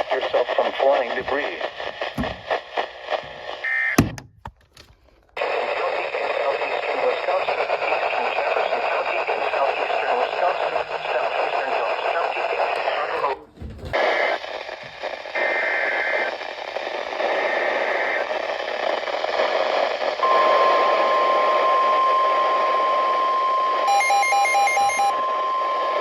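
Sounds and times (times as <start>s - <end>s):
radio static: 0.0s - 4.0s, 5.4s - 26.0s
pulsing alarm beeps: 20.2s - 26.0s
steady alarm tone: 20.2s - 26.0s.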